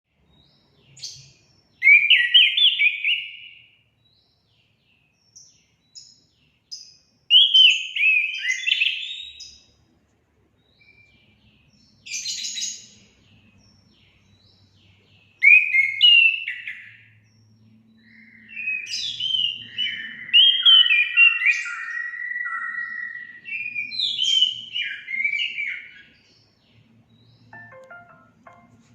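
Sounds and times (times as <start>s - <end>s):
thrush singing whistles and warbles: 1.8s - 3.6s, 7.3s - 9.4s, 15.4s - 26.2s.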